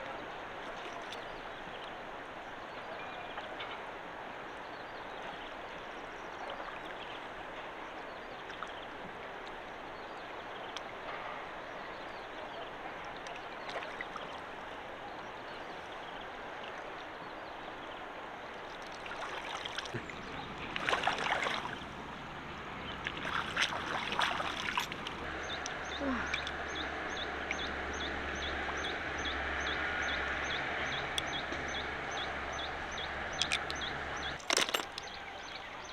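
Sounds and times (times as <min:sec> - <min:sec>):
shallow river water flowing: 0:00.0 - 0:35.9
water being disturbed: 0:18.7 - 0:28.0.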